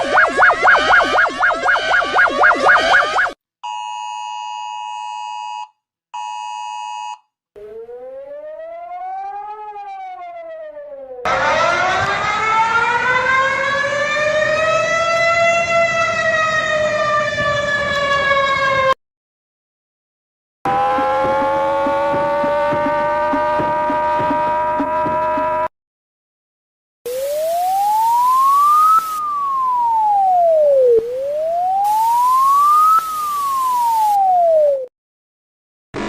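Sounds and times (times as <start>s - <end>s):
fast warbling alert tone: 0.0s - 3.4s, 27.1s - 34.9s
siren rising and falling: 0.0s - 3.4s, 7.6s - 19.0s, 20.7s - 25.7s, 27.1s - 34.9s
two-tone alert: 0.0s - 3.9s.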